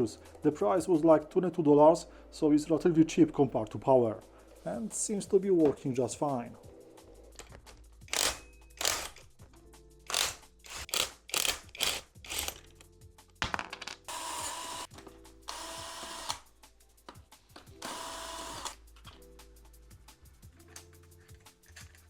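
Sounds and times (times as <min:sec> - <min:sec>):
soft background music: 0:00.0 - 0:22.0
power drill whirring: 0:08.1 - 0:09.2, 0:10.1 - 0:12.6, 0:14.1 - 0:14.9, 0:15.5 - 0:16.4, 0:17.8 - 0:18.8.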